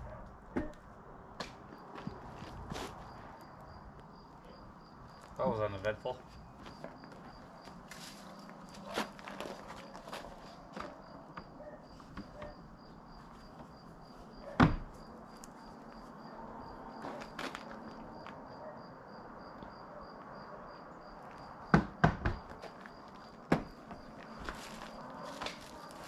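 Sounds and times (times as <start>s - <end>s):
sharp knocks: 21.7s - 22.5s.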